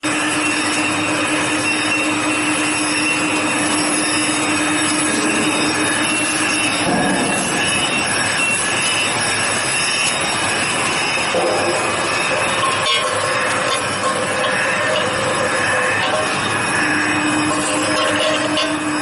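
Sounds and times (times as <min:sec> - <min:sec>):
high-pitched whining tones: 0:00.0 - 0:19.0
low hum: 0:00.6 - 0:19.0.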